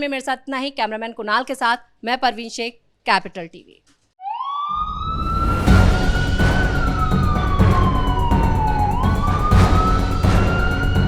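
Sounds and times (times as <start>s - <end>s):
siren-like sweeping tone: 4.2s - 11.0s
steady drum beat: 5.7s - 11.0s.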